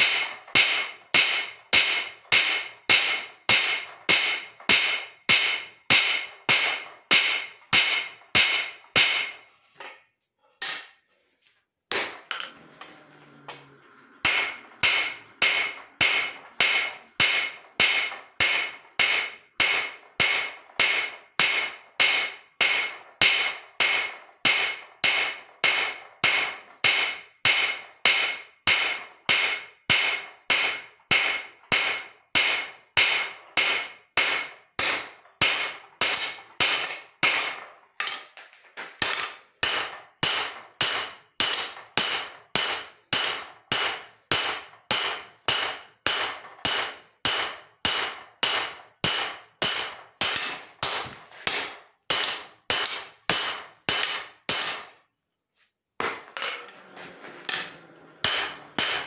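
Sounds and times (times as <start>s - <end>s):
hammer striking steel on anvil: 0.0s - 10.0s, 10.6s - 11.0s, 11.9s - 12.4s, 14.2s - 55.0s, 56.0s - 56.7s, 57.4s - 59.0s.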